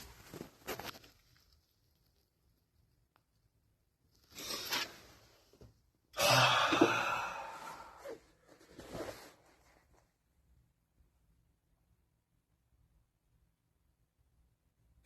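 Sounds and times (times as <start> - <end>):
person sighing heavily: 6.1 - 8.2.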